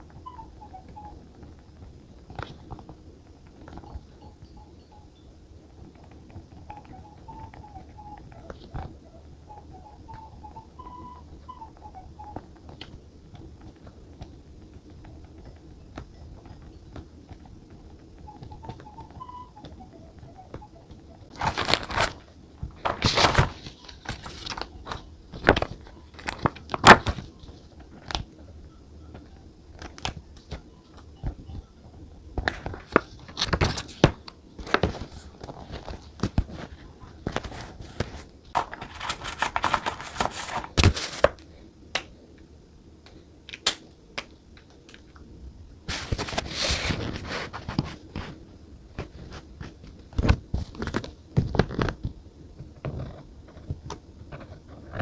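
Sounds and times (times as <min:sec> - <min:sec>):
paper rustling and crinkling: 0:21.2 - 0:28.3, 0:32.4 - 0:41.5, 0:45.9 - 0:52.2
paper tearing: 0:38.6 - 0:41.3.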